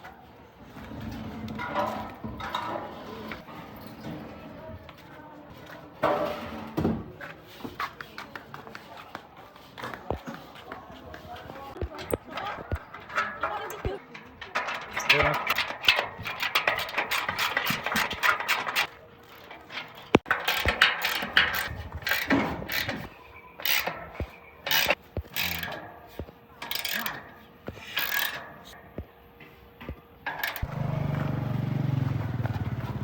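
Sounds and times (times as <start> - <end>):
voices: 0.0 - 30.0
heavy gear knocking and clattering: 11.8 - 25.9, 30.3 - 30.9
engine running: 30.3 - 33.0.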